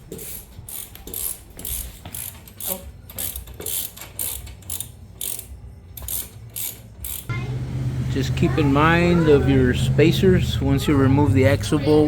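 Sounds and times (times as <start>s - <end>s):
ratchet wrench clicking: 0.1s - 7.3s.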